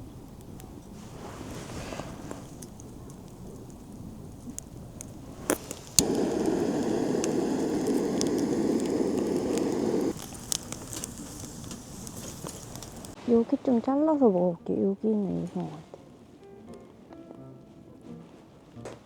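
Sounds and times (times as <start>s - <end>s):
steady crackling noise: 0.0s - 13.2s
sharp clicks: 4.4s - 13.2s.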